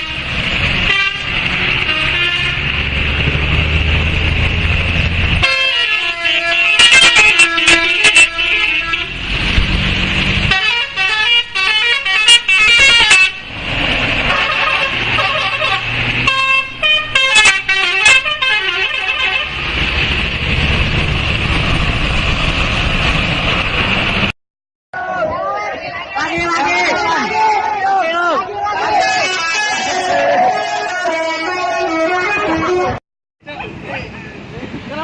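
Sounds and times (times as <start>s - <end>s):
multi-tone musical bus horn: 0.0s - 2.8s, 5.4s - 9.5s, 10.4s - 13.5s, 14.2s - 19.6s, 28.9s - 33.0s.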